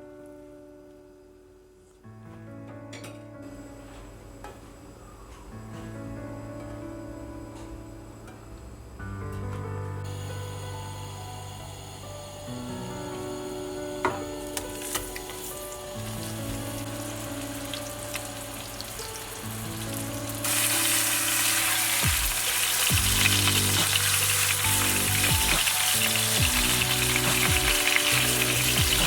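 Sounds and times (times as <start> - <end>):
background music: 0.0 - 29.0
food sizzling in a hot pan: 13.3 - 29.0.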